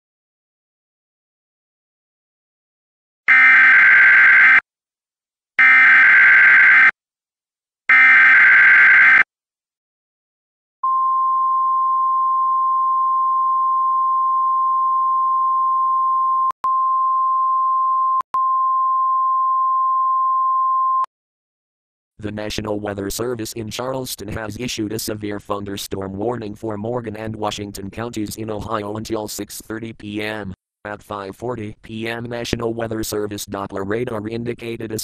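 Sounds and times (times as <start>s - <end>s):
steady single-pitch alarm tone: 3.3s - 4.6s, 5.6s - 7.0s, 7.9s - 9.3s.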